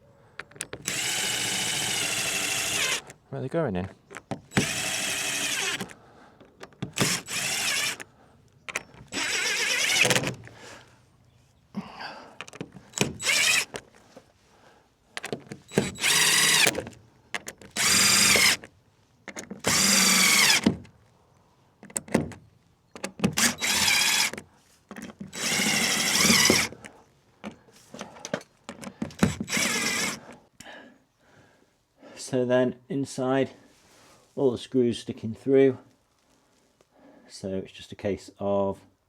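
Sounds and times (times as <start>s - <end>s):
power drill whining: 0.6s - 3.2s, 4.5s - 6.0s, 6.6s - 8.1s, 8.7s - 10.6s, 12.4s - 13.8s, 15.2s - 18.7s, 19.4s - 20.8s, 23.1s - 24.5s, 25.1s - 26.9s, 28.9s - 30.4s.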